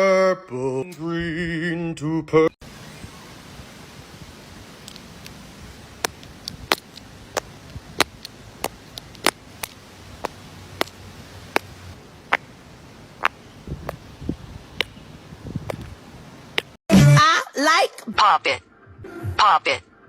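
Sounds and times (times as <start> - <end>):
faint hiss: 2.6 - 16.6.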